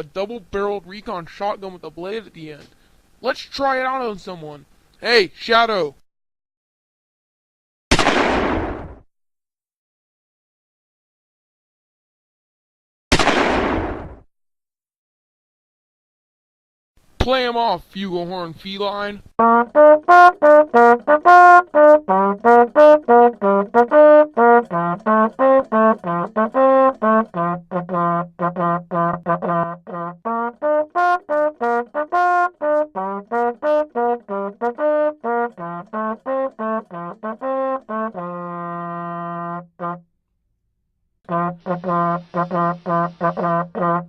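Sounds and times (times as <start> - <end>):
brass instrument playing bouncy tune: 19.4 - 40.1, 41.3 - 44.0.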